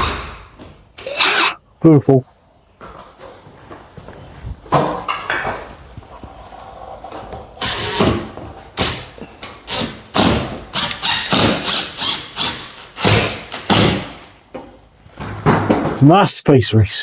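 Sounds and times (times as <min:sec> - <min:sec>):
sharp knocks: 0:07.6 - 0:16.0.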